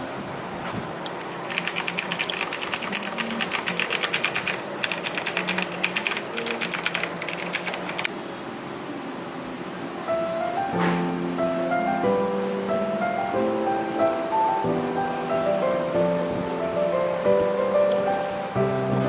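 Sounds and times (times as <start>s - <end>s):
fast typing on mechanical keyboard: 1.3s - 8.1s.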